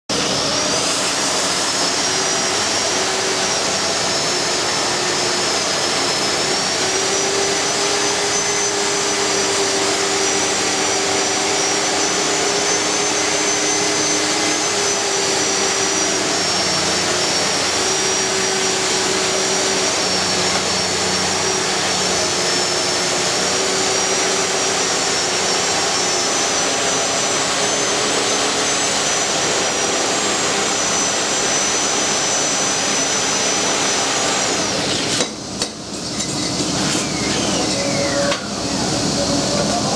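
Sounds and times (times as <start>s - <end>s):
core drill through concrete: 0.1s - 39.9s.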